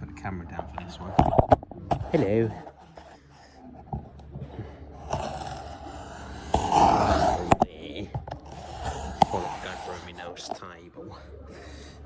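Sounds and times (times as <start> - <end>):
rustling and scraping handling noise: 0.6 - 10.9.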